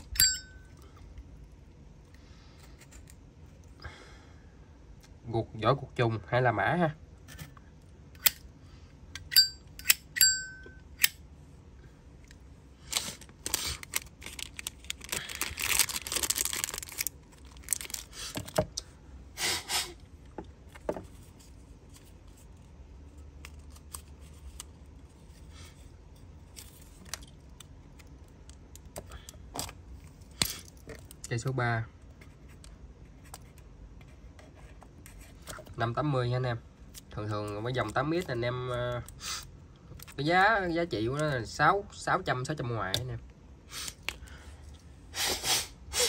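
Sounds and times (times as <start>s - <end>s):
high ringing ping: 0.2s - 0.7s, 9.3s - 10.8s.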